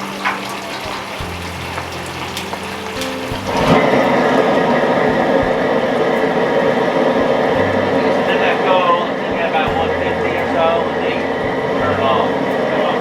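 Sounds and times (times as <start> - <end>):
low steady hum: 0.0 - 13.0
spraying water rushing: 0.0 - 13.0
steady mechanical whine: 3.0 - 13.0.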